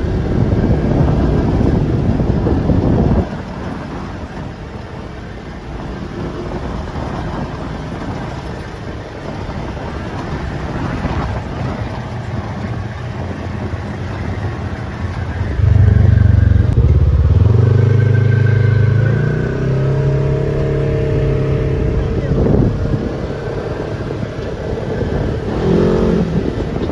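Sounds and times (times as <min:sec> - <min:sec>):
off-road vehicle engine revving: 0:05.8 - 0:26.9.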